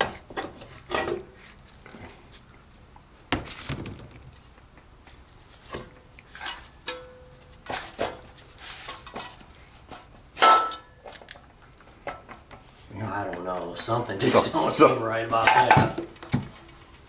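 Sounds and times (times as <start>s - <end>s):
metal tools clinking on workbench: 15.3s - 16.9s.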